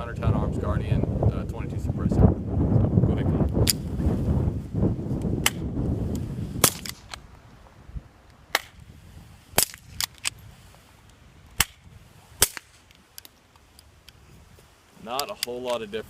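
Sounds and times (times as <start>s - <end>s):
pistol shots cracking: 6.6s - 7.2s, 9.6s - 10.2s, 12.4s - 12.8s.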